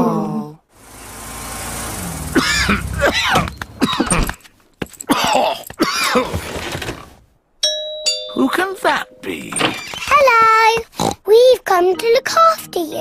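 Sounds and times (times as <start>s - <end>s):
cartoon bear groaning and coughing: 2.3s - 4.4s, 5.0s - 6.4s.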